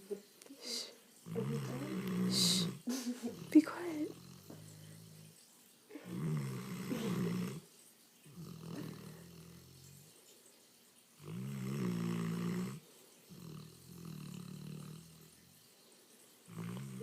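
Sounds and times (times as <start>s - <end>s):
dog snoring: 1.2s - 7.7s, 8.3s - 10.2s, 11.2s - 15.7s, 16.4s - 17.0s.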